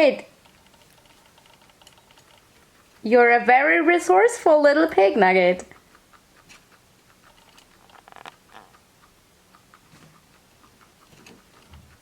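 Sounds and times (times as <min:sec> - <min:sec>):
small clicks and crackles: 0:00.3 - 0:03.1, 0:05.6 - 0:12.0
rustle: 0:05.8 - 0:12.0.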